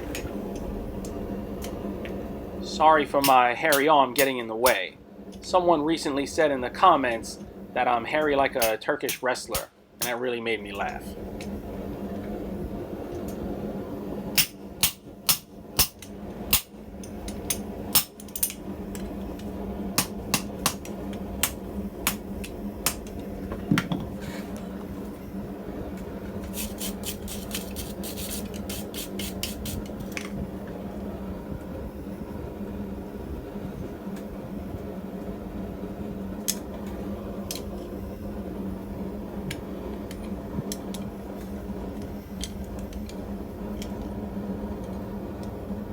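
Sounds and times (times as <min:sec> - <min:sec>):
steady low hum: 0:00.0 - 0:45.9
hammer striking hot steel: 0:08.5 - 0:10.2, 0:14.4 - 0:18.6, 0:20.0 - 0:23.1.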